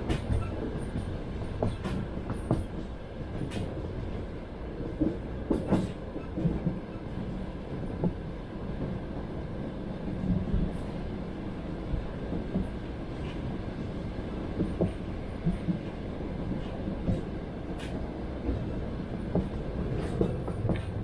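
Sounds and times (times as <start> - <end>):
train wheels rumbling on rails: 0.0 - 21.0.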